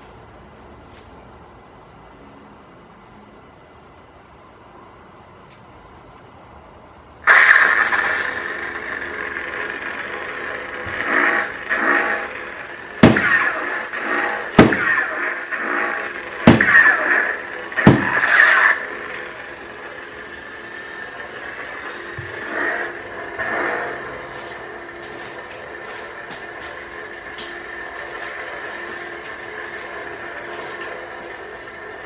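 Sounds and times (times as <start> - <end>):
lightsaber ignition: 7.2 - 32.0
lightsaber hum: 7.3 - 32.0
lightsaber clash strikes: 13.0 - 19.1.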